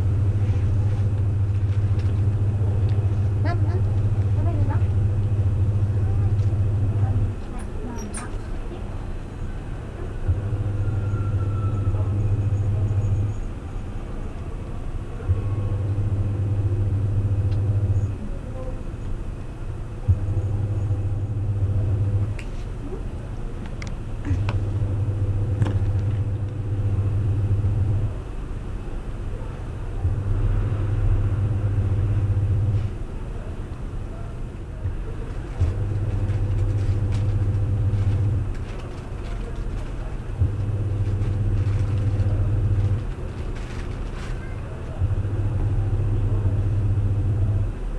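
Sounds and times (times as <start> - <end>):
washing machine motor humming: 0.0 - 7.8, 10.3 - 13.4, 15.3 - 18.2, 19.9 - 22.4, 23.5 - 28.7, 30.0 - 33.2, 34.3 - 47.9.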